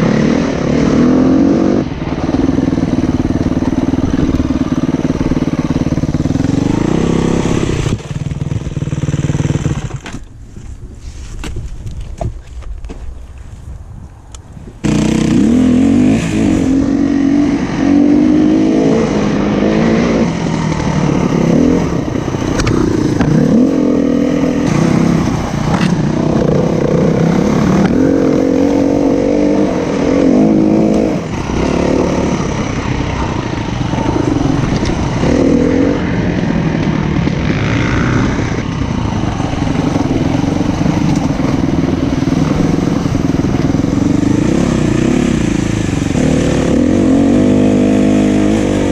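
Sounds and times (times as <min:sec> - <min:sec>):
motorcycle engine revving: 0:00.0 - 0:10.3, 0:14.8 - 0:48.9.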